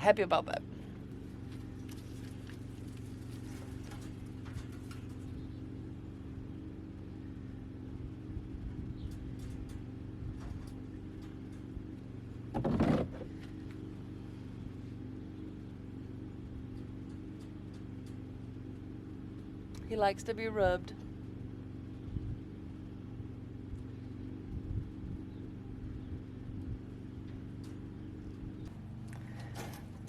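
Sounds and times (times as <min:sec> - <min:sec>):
motor running steadily: 0:00.0 - 0:30.0
light clicks and rustles: 0:01.1 - 0:05.6, 0:09.0 - 0:12.0, 0:27.2 - 0:30.0.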